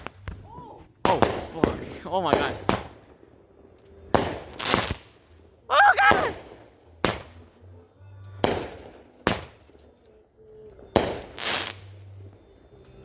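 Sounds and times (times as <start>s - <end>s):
fireworks bangs: 0.0s - 3.1s, 4.0s - 5.2s, 8.4s - 9.7s.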